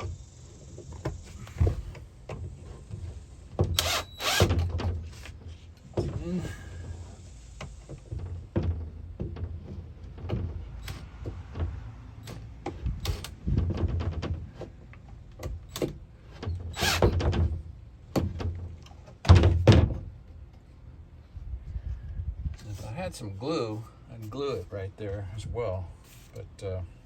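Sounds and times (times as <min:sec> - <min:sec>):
wooden piece knocking and thumping: 0:16.8 - 0:20.1.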